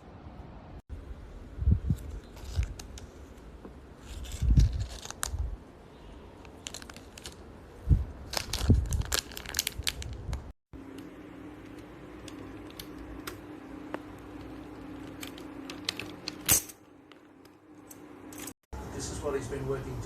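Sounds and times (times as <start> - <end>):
plastic packaging crinkling: 4.0 - 10.6.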